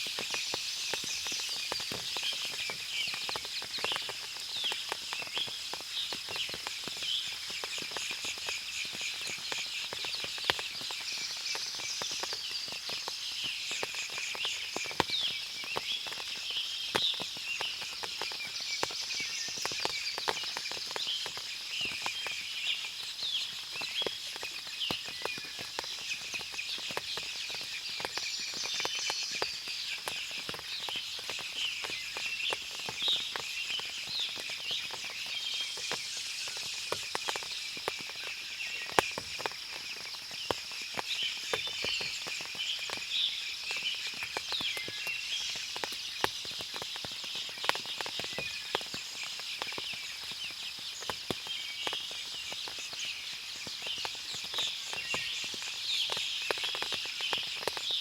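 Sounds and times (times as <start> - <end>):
small birds chirping: 0.0 - 58.0
small sharp ticks: 0.0 - 58.0.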